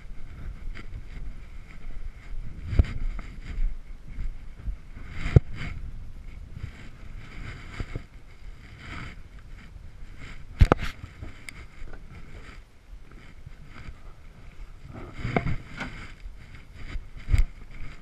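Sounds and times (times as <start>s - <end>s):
wind rumbling on microphone: 0.0s - 18.0s.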